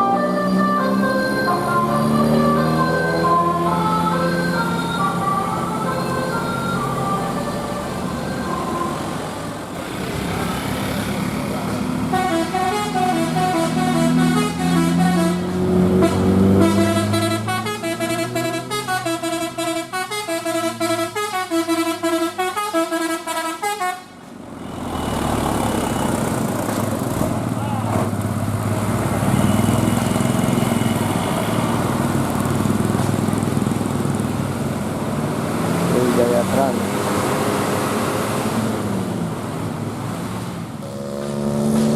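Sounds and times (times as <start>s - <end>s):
bus melody horn: 0.0s - 9.0s, 12.0s - 24.2s
bus engine running: 0.0s - 41.9s.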